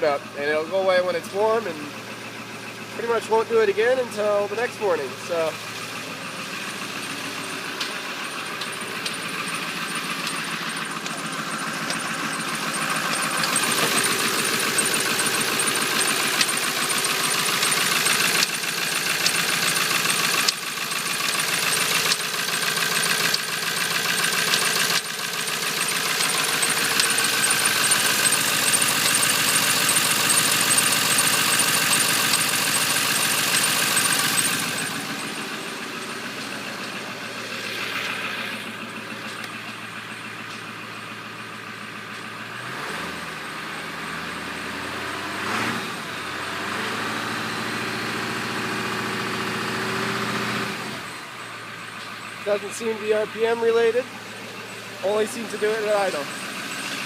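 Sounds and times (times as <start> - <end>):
diesel engine idling: 0.0 - 57.0
fast even engine tapping: 6.6 - 39.6, 52.4 - 57.0.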